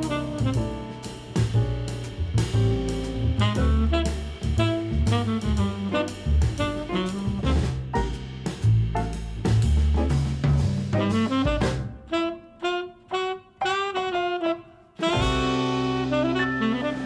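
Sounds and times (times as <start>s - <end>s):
saxophone: 0.0s - 1.0s, 3.4s - 8.0s, 11.0s - 17.0s
bass line: 0.0s - 12.2s, 15.0s - 17.0s
drums: 0.0s - 12.7s, 14.9s - 17.0s.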